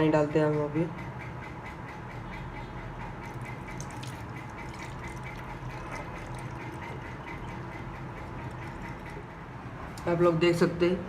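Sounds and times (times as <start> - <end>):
water pouring into plastic container: 3.2 - 9.2.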